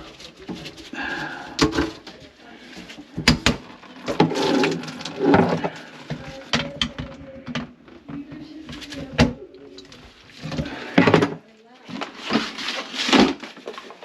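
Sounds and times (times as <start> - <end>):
hands rubbing and scraping pipes: 0.0 - 14.0.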